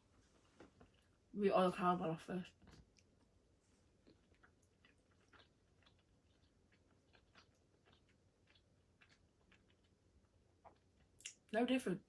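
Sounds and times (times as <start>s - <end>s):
chewing with mouth clicks: 3.9s - 11.4s.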